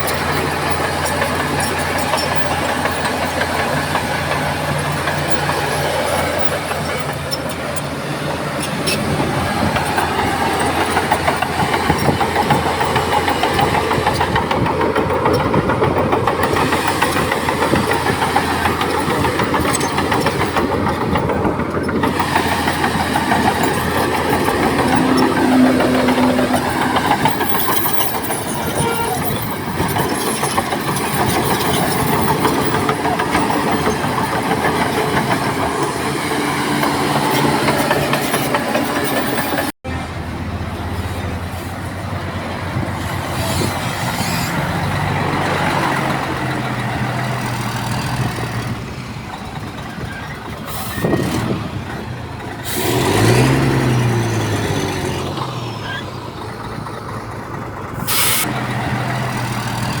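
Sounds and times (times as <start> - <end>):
engine revving: 0.0 - 48.9, 50.7 - 56.2
heavy diesel machinery running: 0.0 - 60.0.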